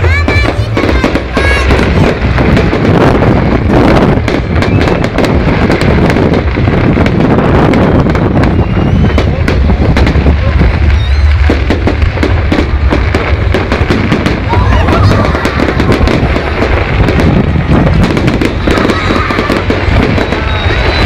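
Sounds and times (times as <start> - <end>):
fireworks crackling and popping: 0.0 - 21.0
firework whistle: 0.8 - 12.7, 13.8 - 21.0.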